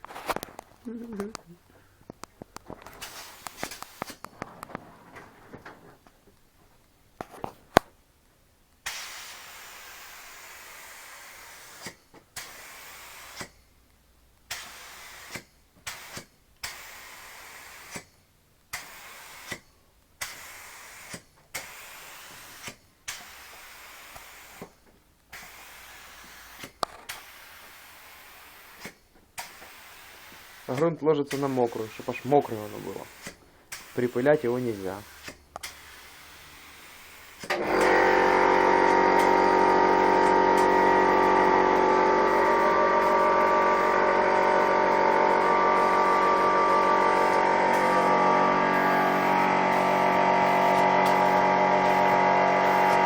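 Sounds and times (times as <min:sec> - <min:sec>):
spray gun hissing: 0:03.0 - 0:04.2, 0:08.8 - 0:13.5, 0:14.5 - 0:18.0, 0:18.8 - 0:19.6, 0:20.2 - 0:24.7, 0:25.3 - 0:53.0
spray gun trigger click: 0:28.8 - 0:38.1, 0:48.8 - 0:53.0.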